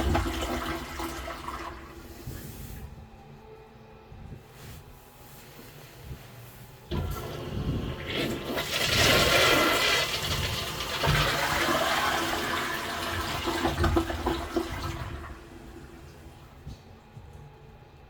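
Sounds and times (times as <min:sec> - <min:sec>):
toilet flushing: 0:00.0 - 0:02.8, 0:06.9 - 0:17.1.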